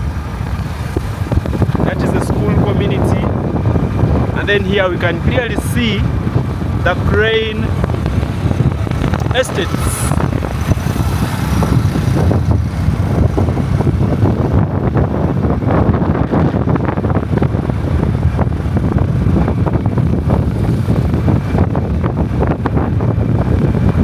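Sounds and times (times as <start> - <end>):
vehicle running noise: 0.0 - 24.0
wind buffeting microphone: 0.0 - 24.0.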